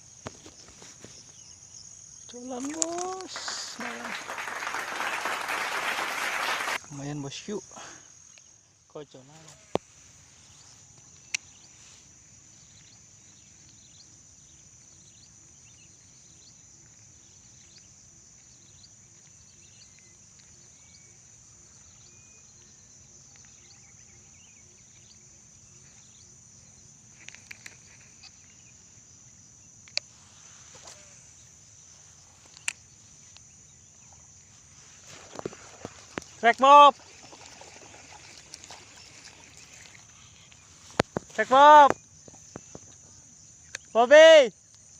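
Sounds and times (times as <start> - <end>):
insects chorus: 0.0 - 44.9.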